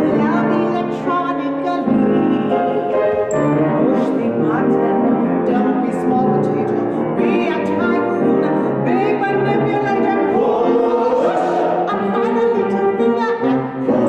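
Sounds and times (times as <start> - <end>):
instrumental accompaniment: 0.0 - 14.0
group singing a show tune: 9.1 - 12.7.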